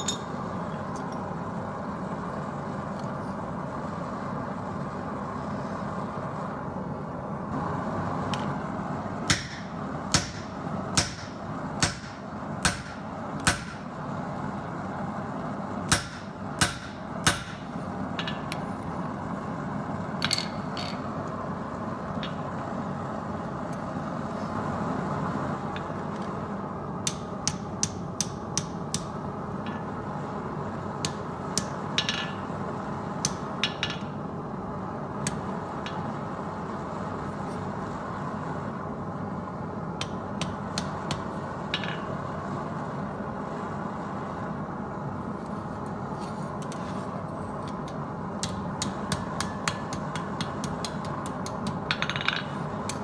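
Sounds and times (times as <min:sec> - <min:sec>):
forging hammer striking steel: 0:09.2 - 0:13.9, 0:15.9 - 0:18.6, 0:27.0 - 0:30.1, 0:47.8 - 0:53.0.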